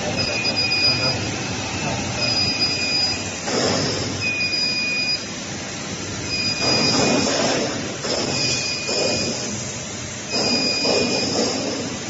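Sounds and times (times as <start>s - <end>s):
factory machinery noise: 0.0s - 12.0s
high electronic beep: 0.1s - 1.2s, 1.8s - 3.4s, 4.2s - 5.3s, 6.3s - 7.3s, 8.3s - 9.5s, 10.3s - 11.4s.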